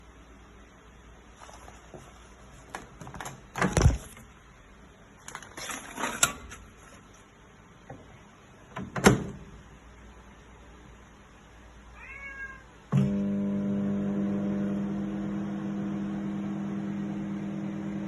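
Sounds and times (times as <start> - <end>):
microwave oven clicks and knocks: 8.7 - 9.5.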